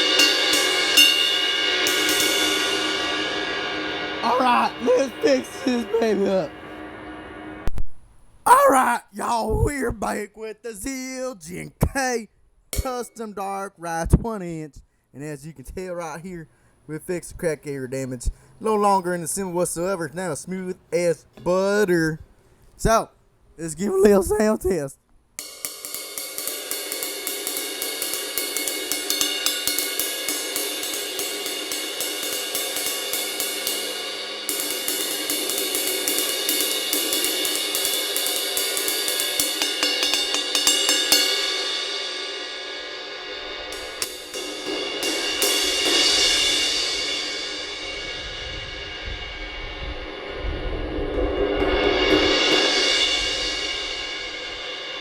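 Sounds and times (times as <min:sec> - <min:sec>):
ride cymbal played with a stick: 0:00.0 - 0:07.7, 0:25.4 - 0:55.0.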